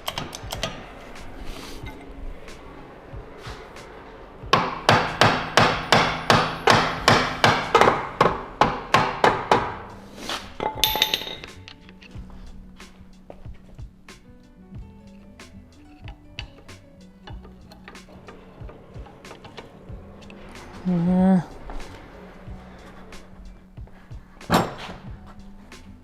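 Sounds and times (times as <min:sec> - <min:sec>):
background music: 0:00.0 - 0:26.0
hammer striking metal: 0:03.4 - 0:09.9, 0:10.6 - 0:11.9.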